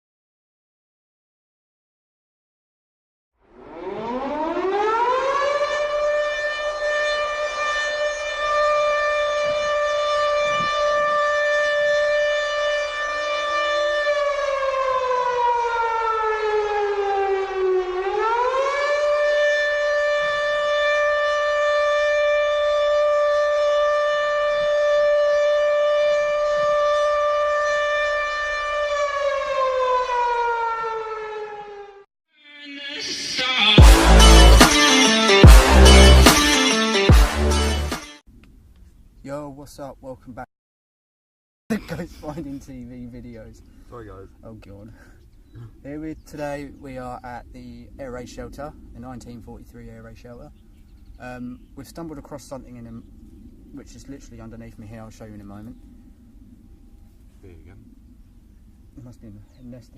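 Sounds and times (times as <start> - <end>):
air raid siren wailing: 3.4 - 38.1.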